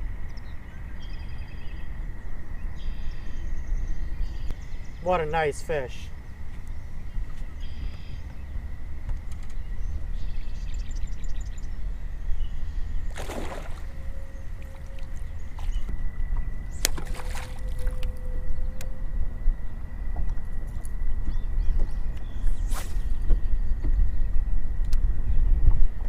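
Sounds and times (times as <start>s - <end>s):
faint high whine: 0.0s - 26.0s
wind rumble on microphone: 0.0s - 26.0s
water splash: 13.1s - 15.2s, 16.8s - 18.1s.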